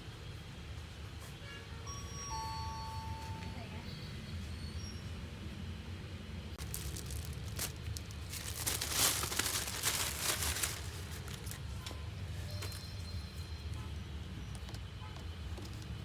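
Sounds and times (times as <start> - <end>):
plastic packaging crinkling: 6.6 - 13.2.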